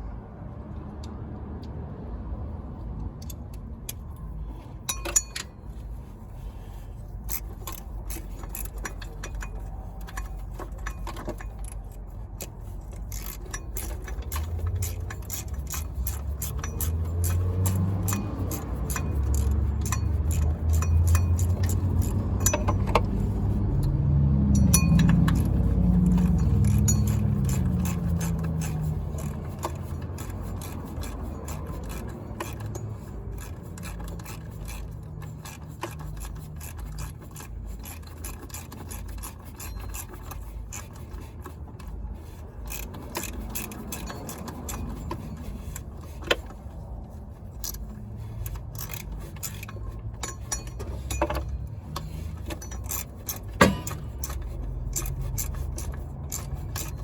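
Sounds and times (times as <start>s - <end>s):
metal hand tools clinking: 7.3s - 23.3s, 24.5s - 41.0s, 47.6s - 57.0s.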